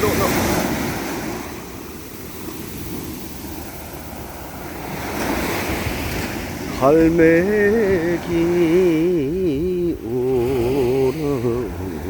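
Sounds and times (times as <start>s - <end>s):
sea waves washing ashore: 0.0s - 12.0s
person singing wavering note: 6.8s - 12.0s.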